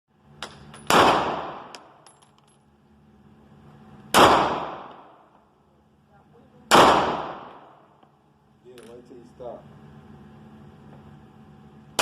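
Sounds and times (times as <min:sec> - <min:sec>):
gunshots with long echo: 0:00.9 - 0:01.8, 0:04.1 - 0:05.2, 0:06.7 - 0:07.9.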